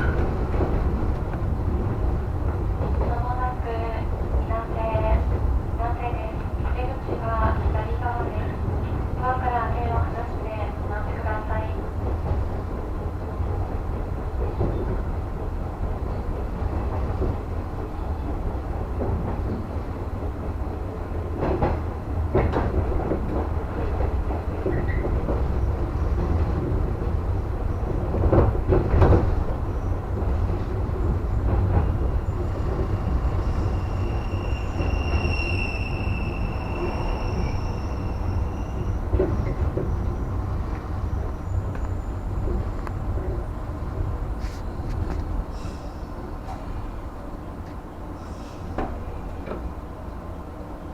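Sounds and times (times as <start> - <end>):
train wheels rumbling on rail: 0.0 - 50.9
clacks over rail joints: 21.3 - 27.1
high wheel squeal: 32.4 - 39.1.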